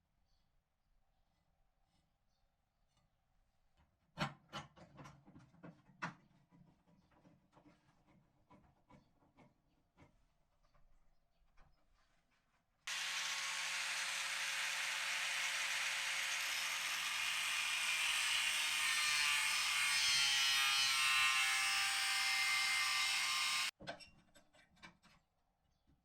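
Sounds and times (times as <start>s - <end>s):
power tool on metal: 12.9s - 23.7s.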